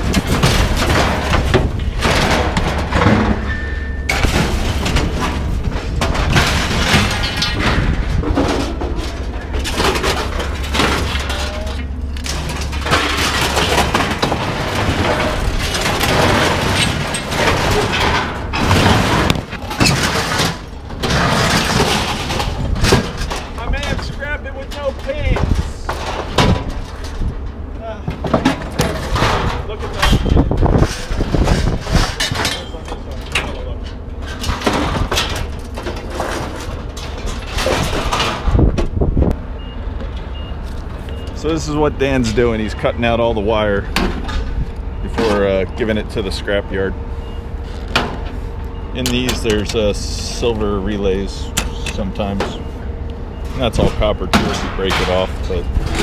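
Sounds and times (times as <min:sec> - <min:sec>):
heavy metal knocks: 0:00.0 - 0:31.9
scrap metal clattering and crashing: 0:00.0 - 0:56.0.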